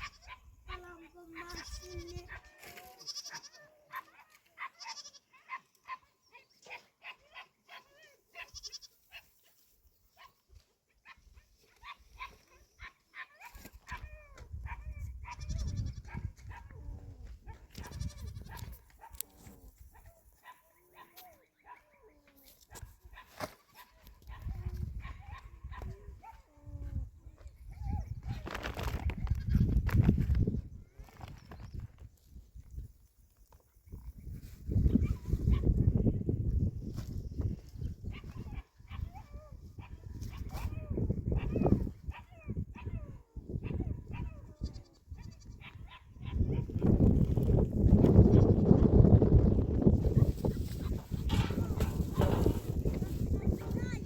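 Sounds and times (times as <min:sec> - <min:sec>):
goats bleating: 0:01.4 - 0:03.7, 0:04.6 - 0:05.3, 0:08.4 - 0:08.9, 0:17.8 - 0:18.5.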